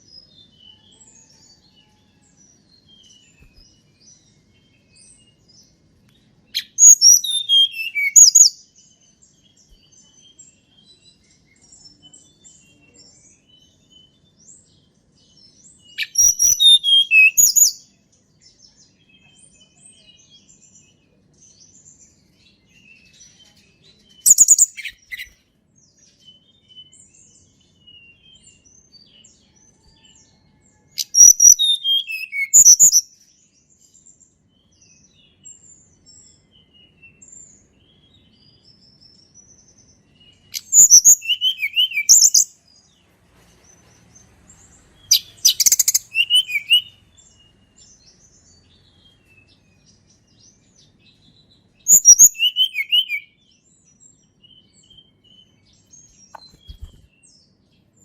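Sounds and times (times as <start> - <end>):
faint soft bird chirps: 0.0 - 58.0
bird song phrases sliding downward: 40.4 - 53.1.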